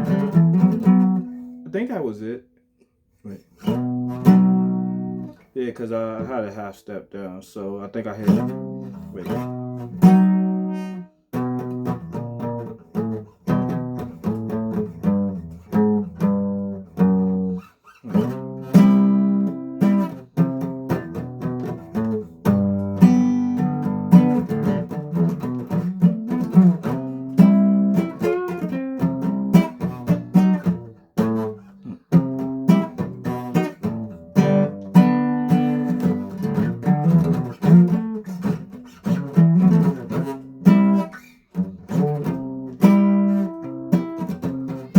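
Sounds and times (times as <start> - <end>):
guitar plucked notes and chords: 0.0 - 2.4, 3.3 - 6.4, 8.1 - 44.9.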